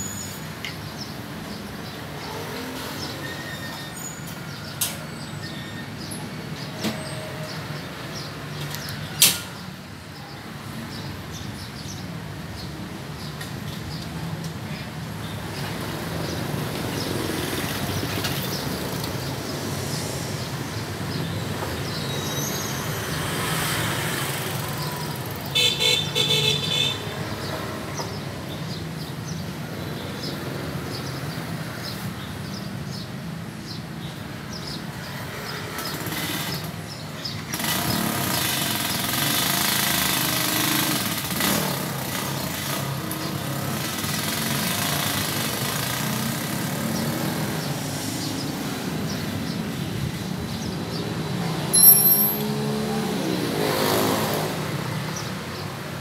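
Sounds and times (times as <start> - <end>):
street traffic: 0.0 - 56.0
vehicle horn honking: 25.6 - 27.0
motorcycles running: 35.3 - 56.0.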